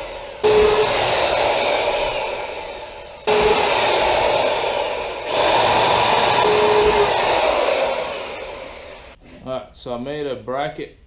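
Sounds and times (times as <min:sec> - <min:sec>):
electric power tool motor: 0:00.0 - 0:09.2.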